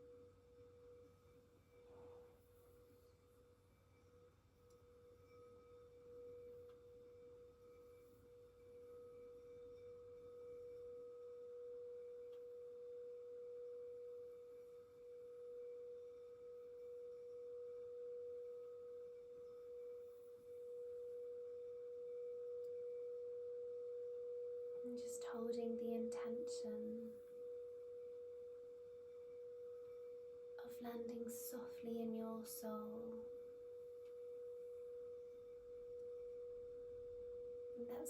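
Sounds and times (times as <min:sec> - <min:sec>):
crystal singing bowl tone: 0:00.0 - 0:38.0.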